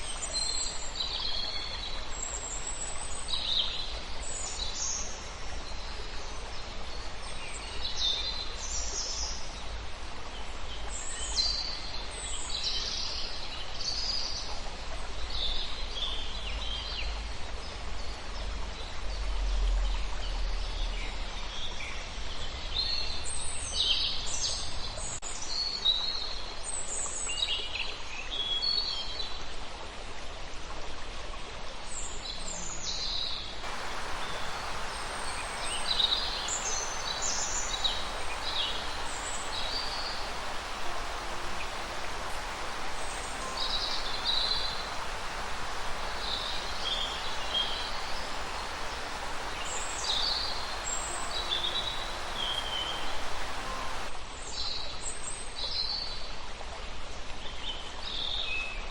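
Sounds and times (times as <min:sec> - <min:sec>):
background hiss: 0:00.0 - 0:20.9, 0:32.8 - 0:54.4.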